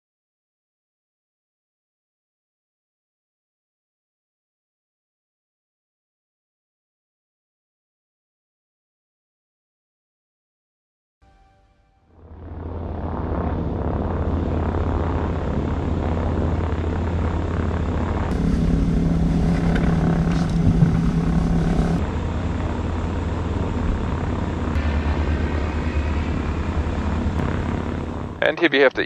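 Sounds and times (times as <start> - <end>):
higher steady tone: 11.2 - 12.8, 18.3 - 29.0
propeller aircraft engine drone: 12.2 - 29.0.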